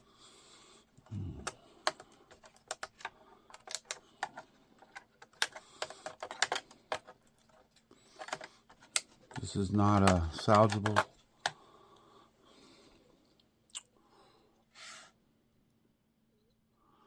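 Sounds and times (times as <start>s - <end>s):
plastic and metal parts clicking: 1.3s - 11.6s.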